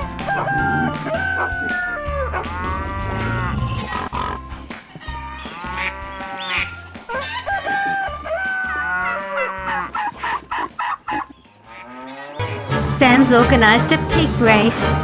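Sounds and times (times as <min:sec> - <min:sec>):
background music with steady beat: 0:00.0 - 0:10.8, 0:12.4 - 0:15.0
chickens clucking: 0:00.0 - 0:12.4
rooster crowing: 0:00.3 - 0:03.7, 0:07.2 - 0:09.9.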